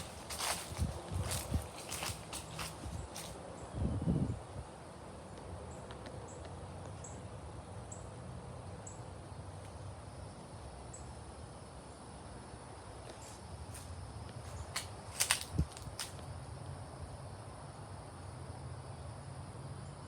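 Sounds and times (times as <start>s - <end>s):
wind rumbling on microphone: 0.0s - 4.7s, 15.1s - 16.1s.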